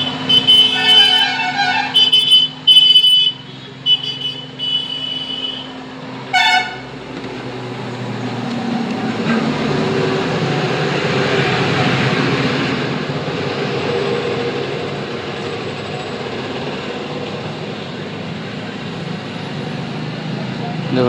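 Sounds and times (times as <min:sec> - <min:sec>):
vehicle horns honking: 0:00.0 - 0:07.0
passing traffic: 0:00.0 - 0:21.0.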